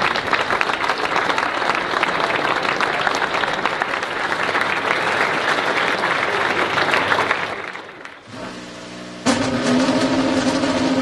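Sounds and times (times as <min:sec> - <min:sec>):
crowd applauding: 0:00.0 - 0:10.2.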